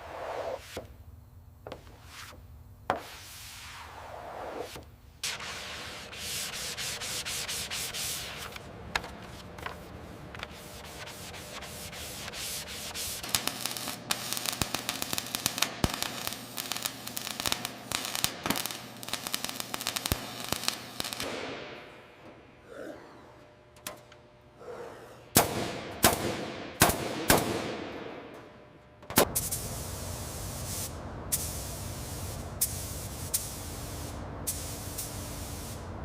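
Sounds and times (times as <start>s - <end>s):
sanding strokes on a surface: 4.6s - 8.5s, 10.5s - 13.3s.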